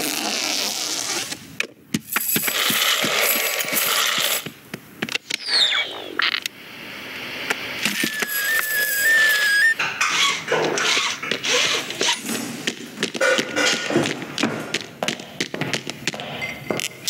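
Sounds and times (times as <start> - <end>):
falling whistle: 7.9 - 9.8.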